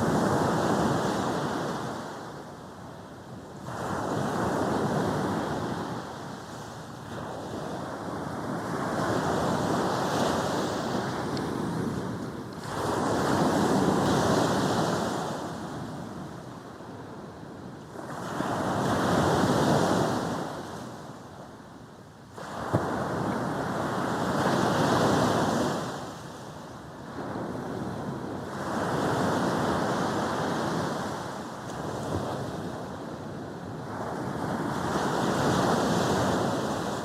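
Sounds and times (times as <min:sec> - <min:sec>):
sea waves breaking on a beach: 0:00.0 - 0:37.0.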